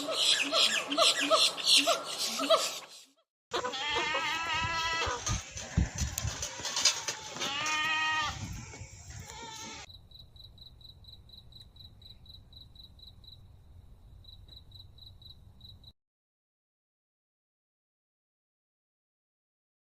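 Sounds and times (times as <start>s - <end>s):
soft animal sounds: 0.0s - 9.9s
goat bleating: 3.5s - 9.9s.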